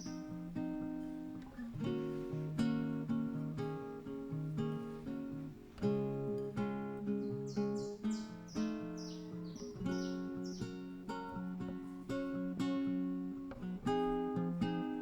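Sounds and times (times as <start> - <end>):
acoustic guitar music: 0.0 - 15.0
high falling chirps: 7.3 - 10.8.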